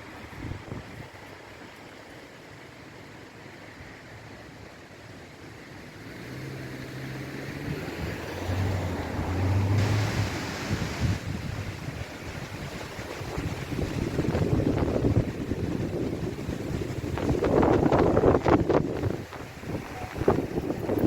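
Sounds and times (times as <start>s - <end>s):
wind buffeting microphone: 0.0s - 1.2s, 7.3s - 21.0s
floodwater rushing: 0.0s - 21.0s
low engine hum: 0.0s - 21.0s.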